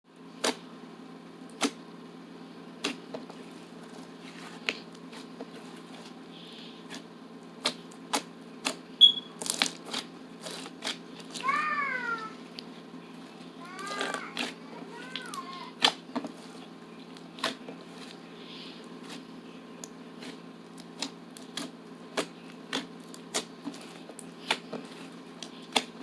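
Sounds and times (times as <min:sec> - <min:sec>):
steady low hum: 0:00.1 - 0:26.0.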